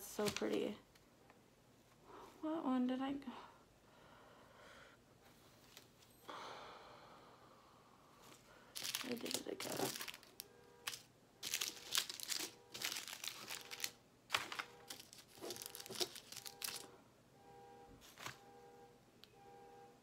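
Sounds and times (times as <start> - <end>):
plastic bags crinkling: 0.0 - 0.8, 8.7 - 16.9.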